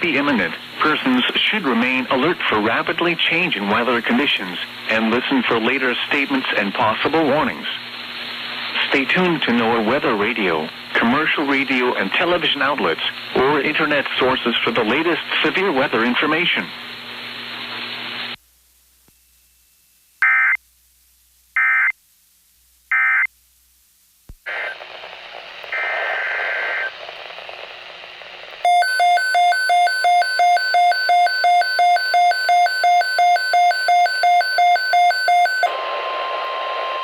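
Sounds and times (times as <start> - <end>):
radio hiss: 0.0 - 19.2, 24.3 - 28.7, 35.6 - 37.0.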